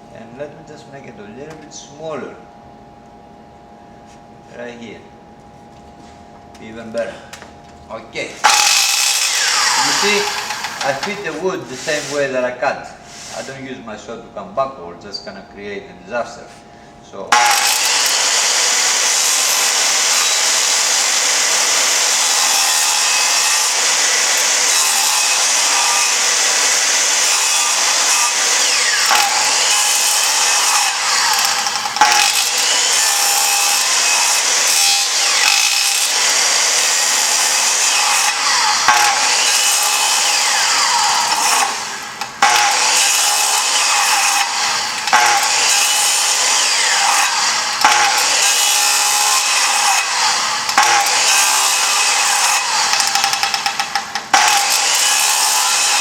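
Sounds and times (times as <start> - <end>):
circular saw cutting wood: 8.4 - 13.6, 17.3 - 56.0.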